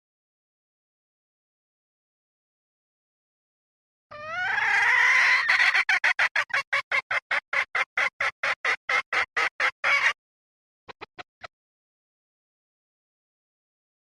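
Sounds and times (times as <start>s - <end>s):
junglefowl hen calling: 4.1s - 10.2s
fast run of short clucks: 10.9s - 11.5s.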